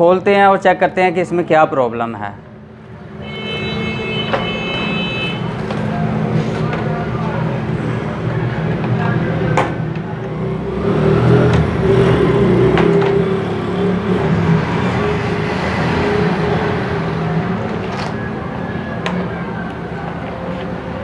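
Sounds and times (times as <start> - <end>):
vehicle engine running: 2.4 - 21.0.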